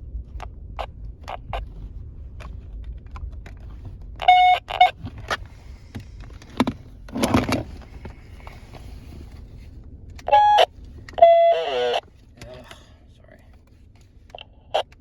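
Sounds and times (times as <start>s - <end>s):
short electronic beeps: 10.3s - 12.0s.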